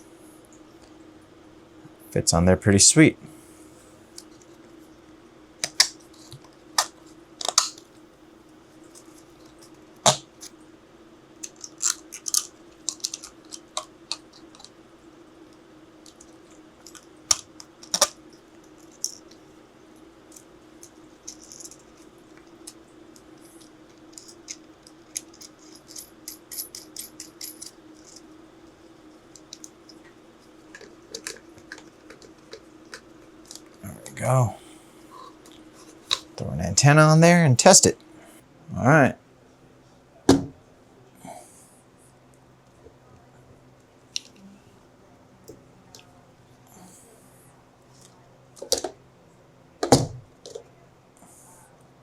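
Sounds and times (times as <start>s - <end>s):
steady low hum: 0.0s - 52.0s
plastic parts clicking and tapping: 5.6s - 7.8s, 11.4s - 14.7s, 16.0s - 18.2s, 30.7s - 33.8s, 48.6s - 49.0s, 49.8s - 50.7s.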